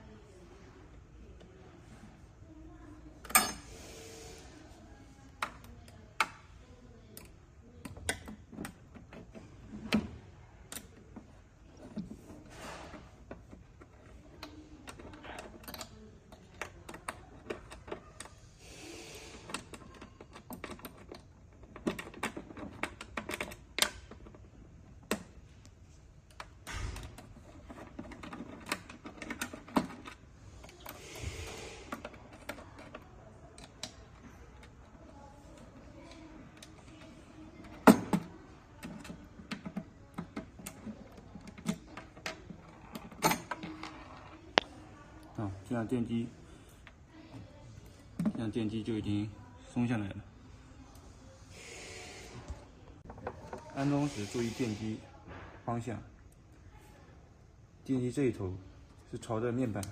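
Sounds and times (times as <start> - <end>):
scraping hisses: 53.8 - 55.0.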